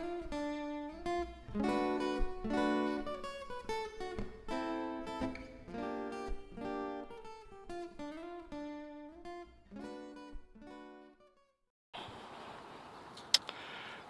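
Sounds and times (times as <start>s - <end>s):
strummed acoustic guitar chords: 0.0s - 11.2s.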